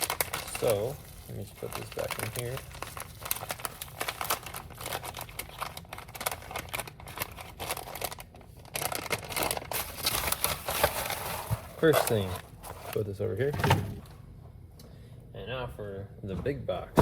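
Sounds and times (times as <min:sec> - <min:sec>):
packaging crinkling and clicking: 0:00.0 - 0:13.0.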